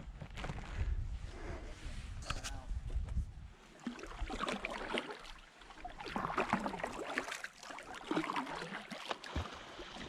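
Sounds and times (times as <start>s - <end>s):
water splashing around kayak: 3.6s - 10.0s.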